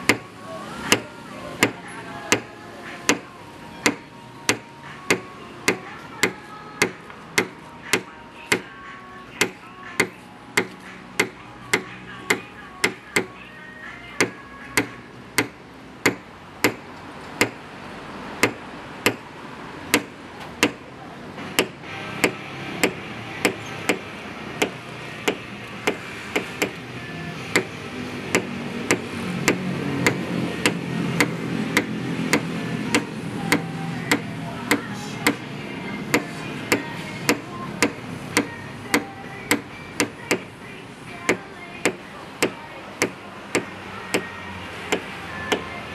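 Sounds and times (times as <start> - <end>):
background music: 0.0 - 16.8, 21.3 - 45.9
hammer tapping car body panel: 0.9 - 2.5, 3.1 - 8.7, 9.4 - 13.3, 14.2 - 16.8, 17.4 - 17.6, 18.4 - 19.2, 19.9 - 20.8, 21.5 - 24.0, 24.6 - 26.8, 27.5 - 27.7, 28.3 - 35.4, 36.1 - 40.4.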